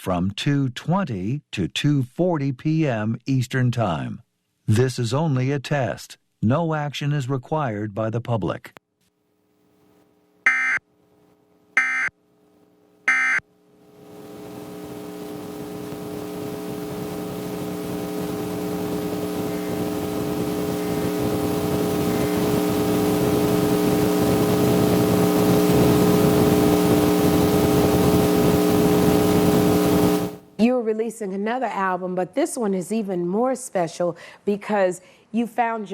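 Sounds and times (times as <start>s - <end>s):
warbling data bursts: 10.5s - 10.8s, 11.8s - 12.1s, 13.1s - 13.4s
electrical buzz with hiss: 14.0s - 30.4s.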